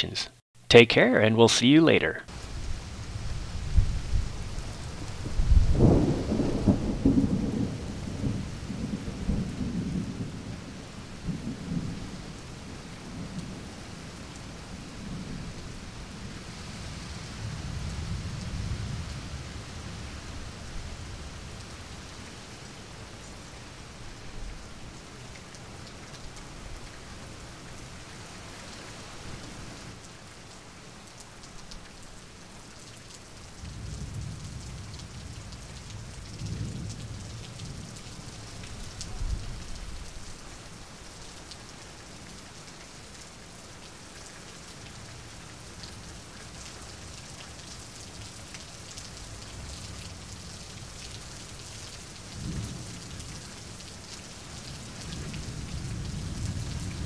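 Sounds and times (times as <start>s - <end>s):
steady rain falling: 2.1s - 57.0s
low rolls of thunder: 2.4s - 22.2s, 33.6s - 40.3s, 52.3s - 53.7s, 54.6s - 57.0s.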